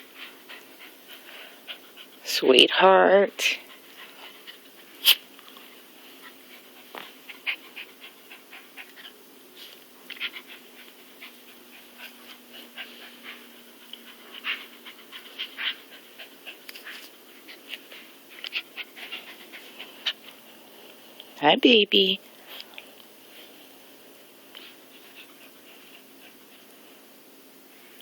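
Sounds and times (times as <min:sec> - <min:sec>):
dog panting: 0:00.0 - 0:02.3, 0:03.4 - 0:21.3, 0:24.4 - 0:27.1.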